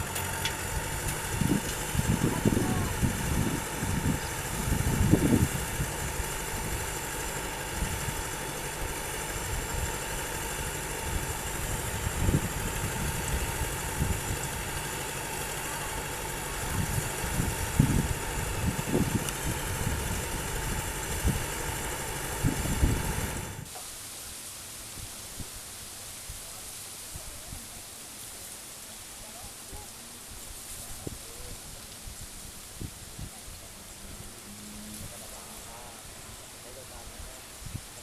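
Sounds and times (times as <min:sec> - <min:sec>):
combine harvester engine running: 0:00.0 - 0:23.7.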